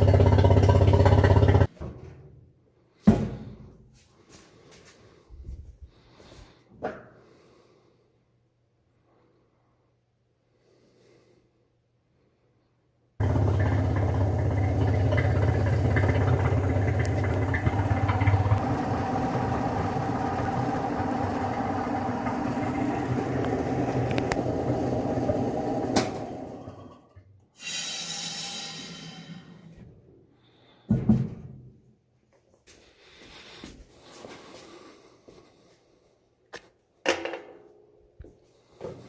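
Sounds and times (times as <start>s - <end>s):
machine motor humming: 13.2s - 26.8s.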